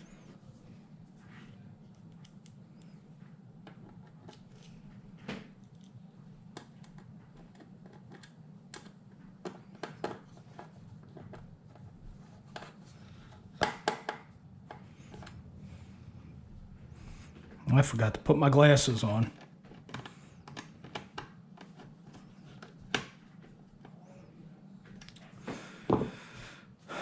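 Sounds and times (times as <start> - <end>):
low hum: 14.3 - 19.4.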